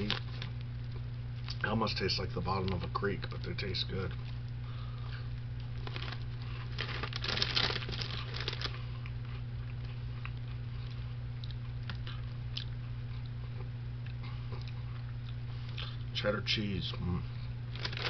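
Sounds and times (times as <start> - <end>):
person chewing crunchy fries: 5.2 - 16.1, 17.7 - 18.0.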